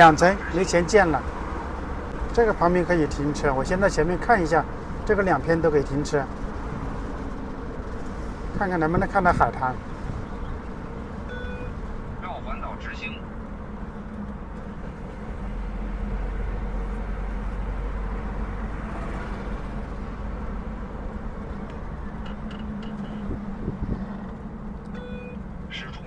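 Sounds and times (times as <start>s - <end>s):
road and engine rumble in car: 0.0s - 26.0s.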